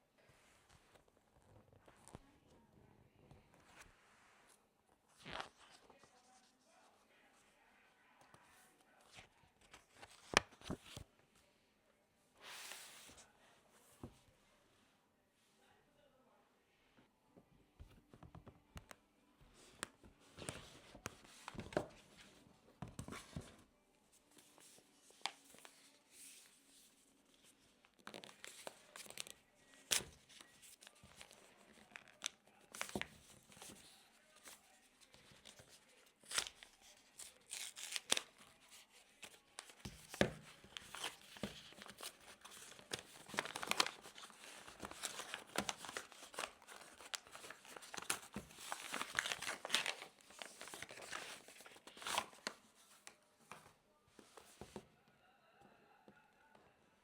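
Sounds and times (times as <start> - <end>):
food packaging rustling and tearing: 40.8 - 52.5.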